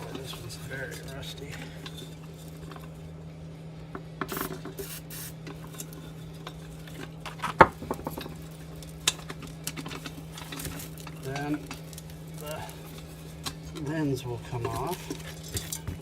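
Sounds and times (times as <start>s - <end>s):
metal clinks and scrapes: 0.0s - 3.2s, 4.2s - 16.0s
steady low hum: 0.0s - 16.0s.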